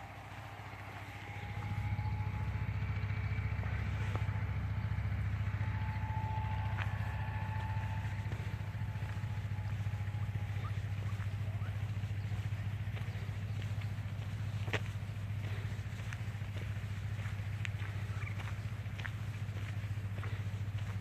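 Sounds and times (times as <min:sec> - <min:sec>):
engine pulsing hum: 0:00.0 - 0:21.0.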